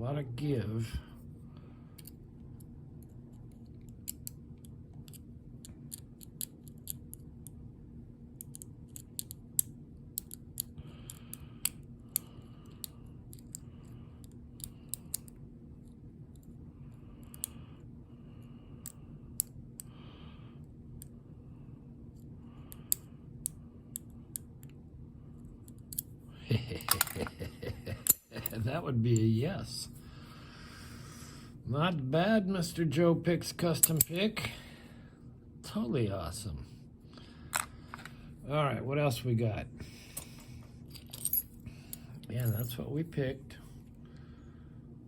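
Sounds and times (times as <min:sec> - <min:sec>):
small metal clicks of lock pins: 0:03.6 - 0:07.6, 0:08.4 - 0:15.4, 0:25.6 - 0:26.1, 0:28.0 - 0:28.3, 0:33.8 - 0:34.2, 0:41.0 - 0:42.7.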